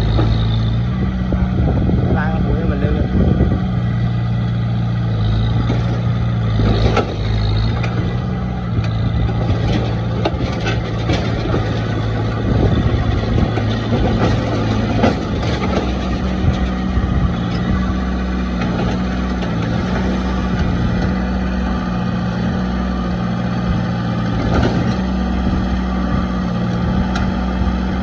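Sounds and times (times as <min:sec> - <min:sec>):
heavy diesel engine running: 0:00.0 - 0:28.0
metallic clanks and knocks: 0:08.8 - 0:12.3.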